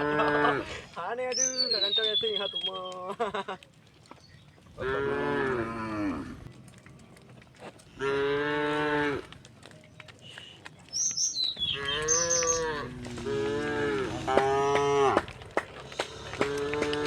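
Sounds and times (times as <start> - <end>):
cows mooing: 0.0 - 0.7, 4.7 - 9.4, 11.6 - 17.0
bird chirping: 1.2 - 3.1, 4.0 - 4.8, 9.6 - 12.8.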